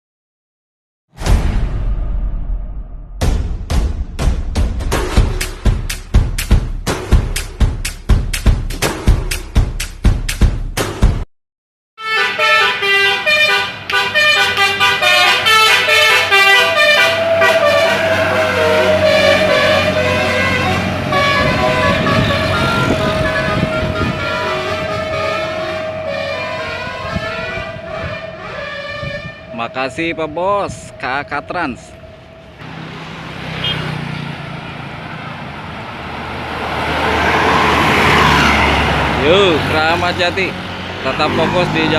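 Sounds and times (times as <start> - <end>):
musical air horn melody: 12.0 - 32.6
bus engine low hum: 14.1 - 29.6, 30.2 - 41.9.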